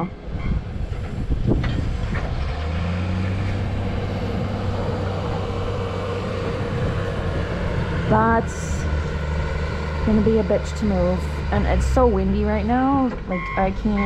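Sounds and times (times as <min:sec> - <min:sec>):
truck engine low drone: 0:00.0 - 0:14.0
wind buffeting microphone: 0:00.0 - 0:14.0.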